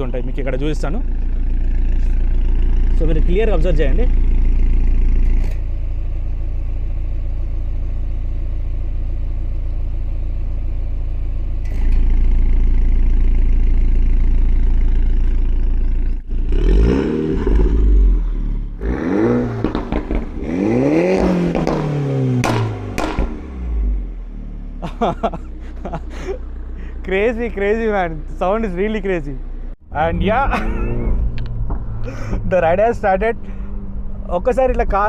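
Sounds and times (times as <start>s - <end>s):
exhaust crack: 0.0s - 7.1s, 11.6s - 35.0s
car engine idling: 0.0s - 35.0s
engine throttle blips: 11.6s - 35.0s.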